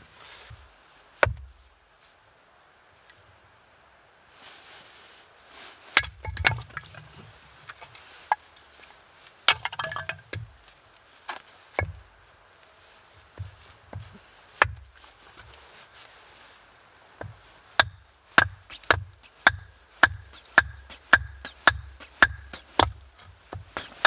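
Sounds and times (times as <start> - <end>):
wood chopping knocks: 1.2 - 1.5, 13.4 - 14.8, 17.2 - 24.0
wood clattering: 6.0 - 8.4, 9.5 - 10.8.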